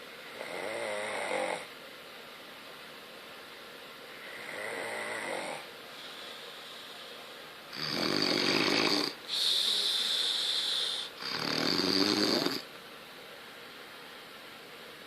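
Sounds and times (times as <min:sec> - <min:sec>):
loud snoring: 0:00.3 - 0:01.7, 0:04.2 - 0:05.7, 0:07.7 - 0:12.7
hissing breath: 0:09.2 - 0:11.2.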